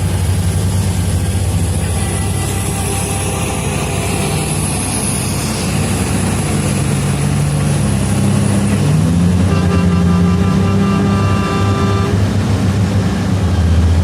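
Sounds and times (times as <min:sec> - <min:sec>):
heavy diesel engines under load: 0:00.0 - 0:14.0
steady high tone: 0:01.0 - 0:08.4.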